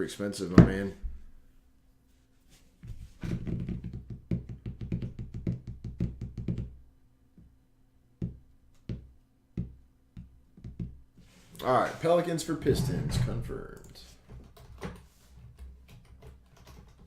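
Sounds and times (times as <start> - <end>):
typing on computer keyboard: 15.6 - 17.0.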